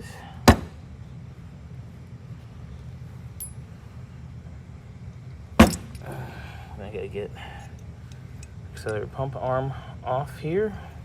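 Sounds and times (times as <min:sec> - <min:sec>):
low steady hum: 0:00.0 - 0:11.0
metal parts clinking on hard surface: 0:05.6 - 0:06.1.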